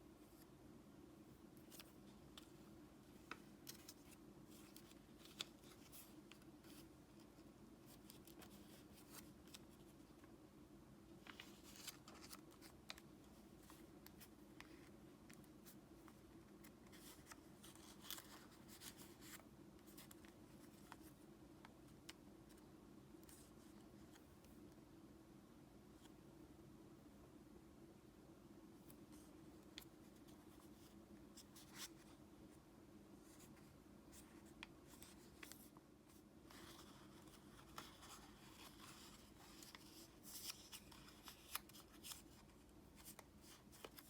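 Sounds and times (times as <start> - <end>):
paper rustling while folded: 3.1 - 10.0, 11.2 - 21.2, 33.3 - 44.0.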